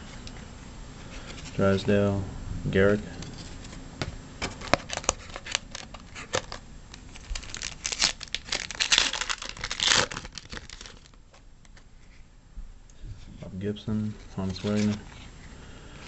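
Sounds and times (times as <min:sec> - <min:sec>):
wrapper crinkling and tearing: 0:04.6 - 0:11.4, 0:14.4 - 0:15.2.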